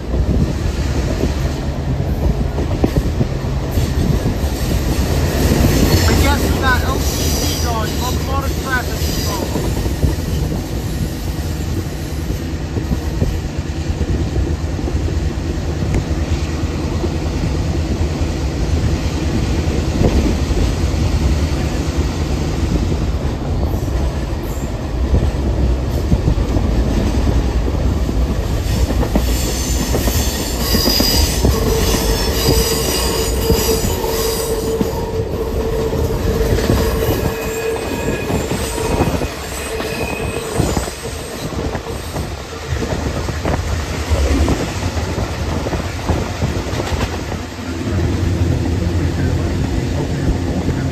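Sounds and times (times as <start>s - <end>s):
train rumble: 0.0s - 50.9s
wheel squeal: 29.3s - 42.3s.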